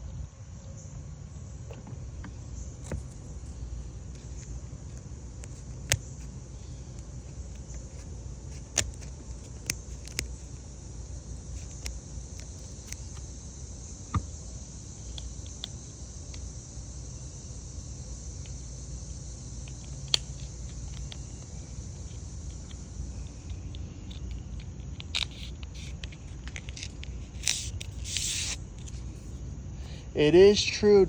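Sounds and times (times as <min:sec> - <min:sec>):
low rumble and hiss: 0:00.0 - 0:31.0
slap bracelet clicks and snaps: 0:19.7 - 0:21.2.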